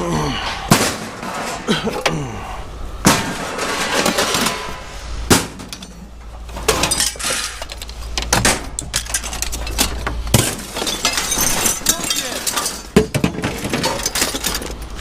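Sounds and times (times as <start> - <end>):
scrap crashing and clattering: 0.4 - 2.0, 3.0 - 15.0.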